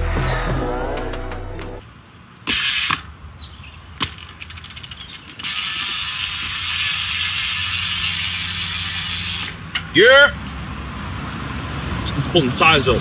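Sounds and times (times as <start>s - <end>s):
bicycle freewheel ratcheting: 4.2s - 9.6s.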